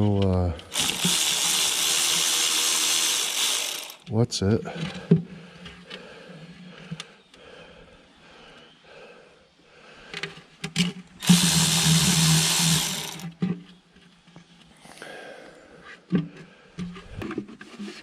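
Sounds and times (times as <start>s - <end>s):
power tool running: 0.7s - 4.1s, 11.2s - 13.3s.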